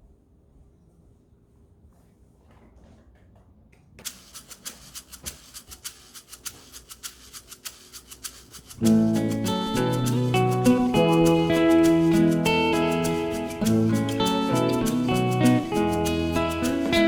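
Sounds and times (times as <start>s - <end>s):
brush scrubbing hard surface: 4.1s - 17.0s.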